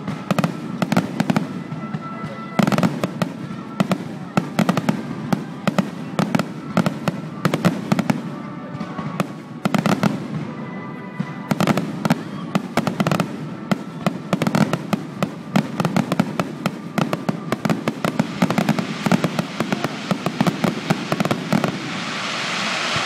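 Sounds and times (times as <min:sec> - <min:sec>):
fireworks bangs and crackling: 0:00.0 - 0:23.0
rushing hiss: 0:11.4 - 0:23.0.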